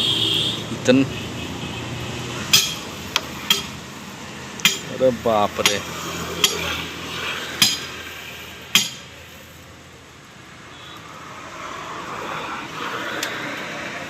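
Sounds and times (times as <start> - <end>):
hammer striking steel rim: 2.5 - 3.8, 4.6 - 6.8, 7.6 - 8.0, 8.7 - 9.1.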